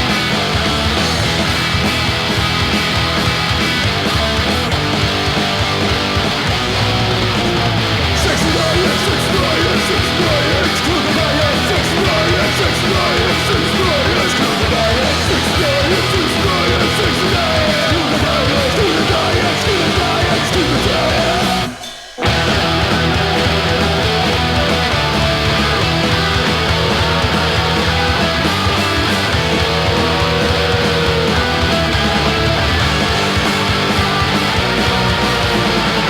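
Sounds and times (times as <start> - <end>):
bass and drums: 0.0 - 36.0
distorted electric guitars: 0.0 - 36.0
punk rock song from vinyl: 0.0 - 36.0.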